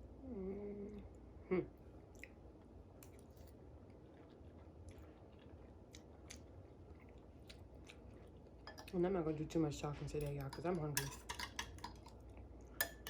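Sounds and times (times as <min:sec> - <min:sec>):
chewing and mouth clicks: 0:02.1 - 0:02.4, 0:03.0 - 0:08.6.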